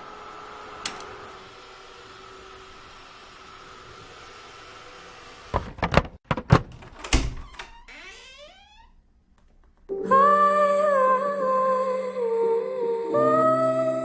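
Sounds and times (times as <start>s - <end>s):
sharp thunks: 5.5s - 7.5s.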